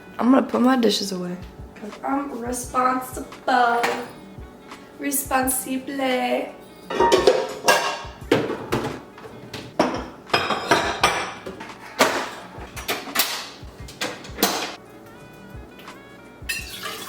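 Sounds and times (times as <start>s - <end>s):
dishes clattering and clinking: 3.7s - 4.2s, 6.8s - 14.8s.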